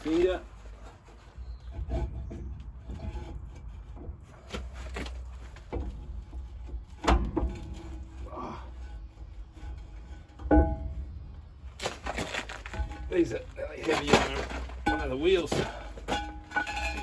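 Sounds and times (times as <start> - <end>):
metal brake shoes clunking: 4.1 - 17.0.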